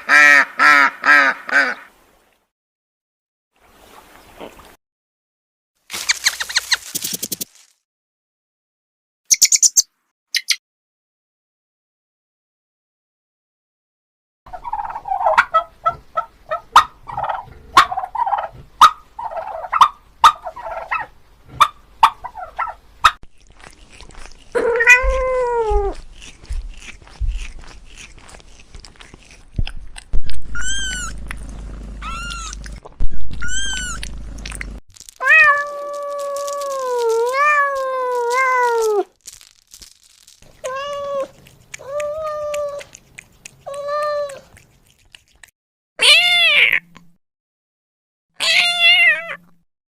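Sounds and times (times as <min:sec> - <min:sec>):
turkey gobbling: 0:14.5 - 0:23.2
cat meowing: 0:24.6 - 0:26.0, 0:30.4 - 0:31.2, 0:32.0 - 0:34.0, 0:35.2 - 0:39.1, 0:40.6 - 0:42.9, 0:43.6 - 0:44.5, 0:46.0 - 0:46.9, 0:48.4 - 0:49.5.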